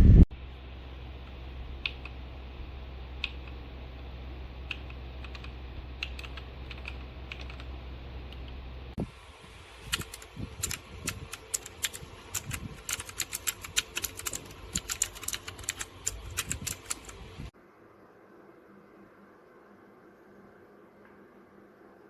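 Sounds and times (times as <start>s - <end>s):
mechanical keyboard typing: 4.7s - 7.7s, 9.9s - 17.2s.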